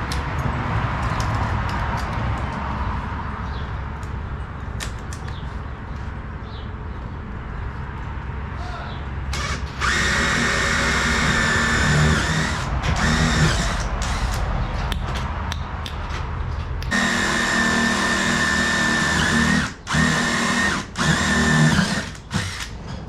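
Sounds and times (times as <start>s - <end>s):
power drill motor whine: 9.3s - 14.4s, 16.9s - 22.8s.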